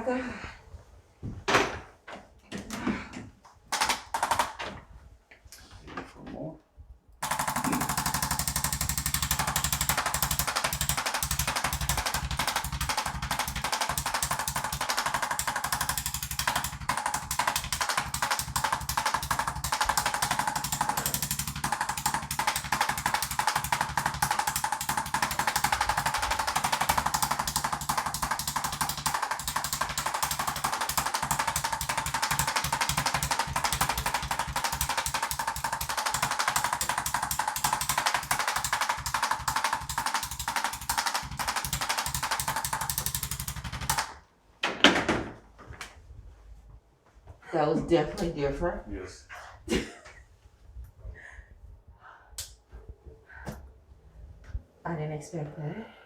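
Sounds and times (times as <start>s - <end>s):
massage tool rapid rattle: 3.7s - 4.8s, 7.2s - 44.2s.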